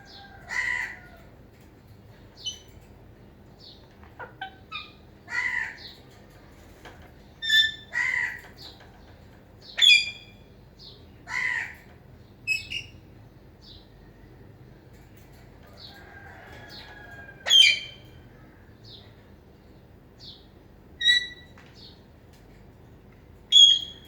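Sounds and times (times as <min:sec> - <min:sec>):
parrot squawking: 0:00.4 - 0:01.1, 0:04.2 - 0:05.9, 0:07.4 - 0:08.4, 0:11.3 - 0:11.8, 0:17.4 - 0:18.0.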